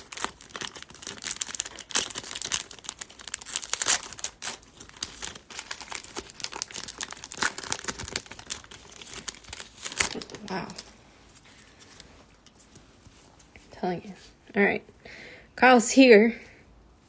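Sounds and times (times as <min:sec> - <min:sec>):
foil wrapper crinkling and tearing: 0:00.0 - 0:12.1.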